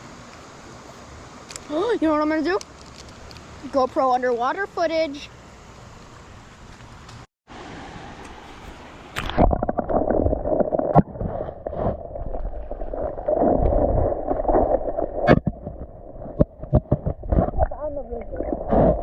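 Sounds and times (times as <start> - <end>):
underwater gurgling creek water: 9.1 - 19.0.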